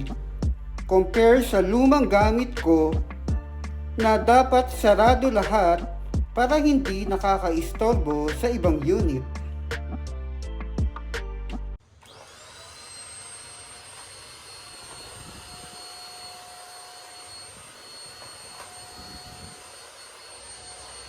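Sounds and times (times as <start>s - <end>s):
handheld vacuum cleaner running: 11.9s - 21.0s.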